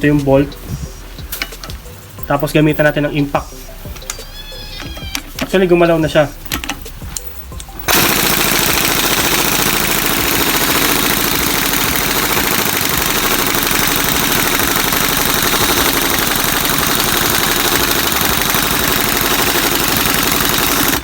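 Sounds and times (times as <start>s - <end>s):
impact wrench rattling: 1.2s - 2.6s, 6.4s - 21.0s.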